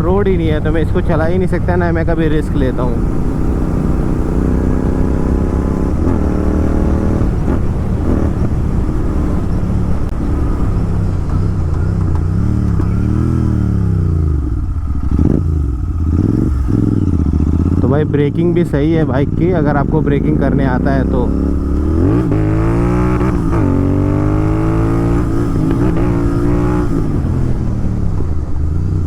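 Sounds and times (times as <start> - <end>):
motorcycle engine running: 0.0 - 29.0
exhaust pop: 2.6 - 16.1.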